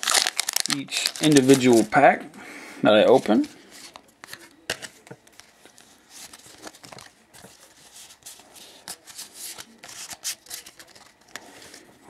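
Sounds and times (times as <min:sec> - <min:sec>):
foil wrapper crinkling: 0:00.0 - 0:02.0.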